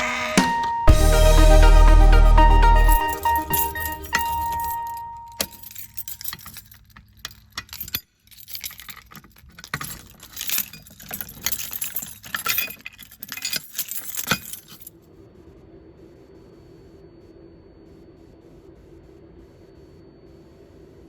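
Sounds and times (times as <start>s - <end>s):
small metal objects jangling: 3.0s - 14.9s.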